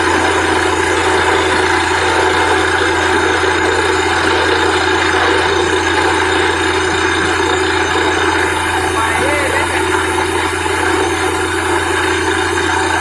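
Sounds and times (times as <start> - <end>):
drilling rig mechanical drone: 0.0 - 13.0.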